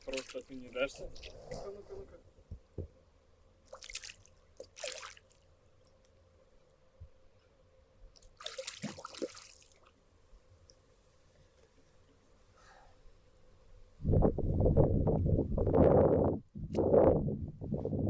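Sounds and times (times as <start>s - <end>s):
fish thrashing in shallow water: 3.7s - 5.4s, 8.2s - 9.9s.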